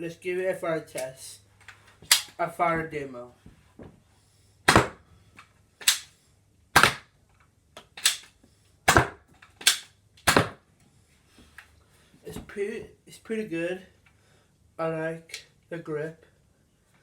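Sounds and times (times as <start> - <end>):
toy blaster plastic snaps: 2.0 - 2.4, 4.7 - 5.0, 5.8 - 6.2, 6.8 - 7.1, 7.8 - 10.6.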